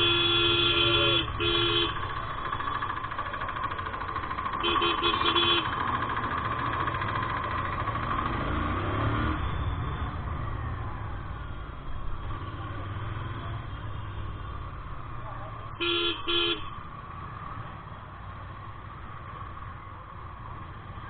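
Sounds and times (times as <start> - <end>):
motorcycle engine running: 0.0 - 21.0
road noise: 0.0 - 21.0.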